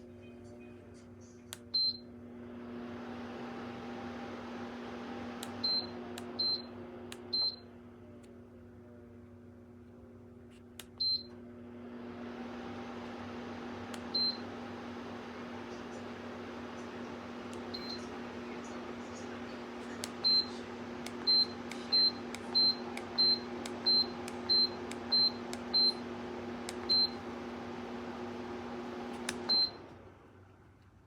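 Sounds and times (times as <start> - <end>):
fan motor humming: 0.0 - 31.0
control panel beeps: 5.5 - 6.7, 7.3 - 7.6, 20.0 - 26.0, 26.7 - 27.2, 29.5 - 29.8.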